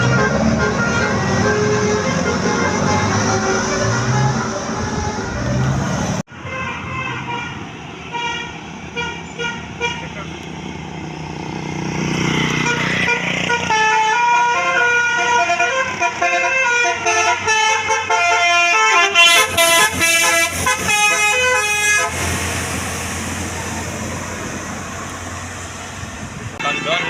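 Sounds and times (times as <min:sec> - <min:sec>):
musical air horn tune: 0:00.0 - 0:05.8, 0:12.6 - 0:22.4.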